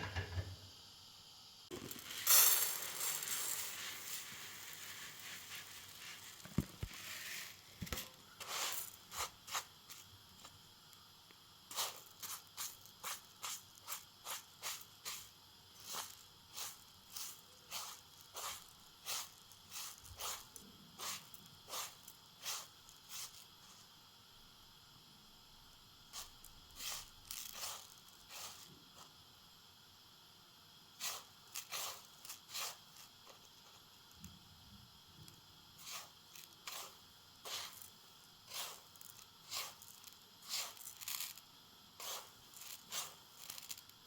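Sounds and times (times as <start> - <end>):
knife cutting strokes: 35.8 - 37.7, 38.5 - 38.9, 42.0 - 43.2.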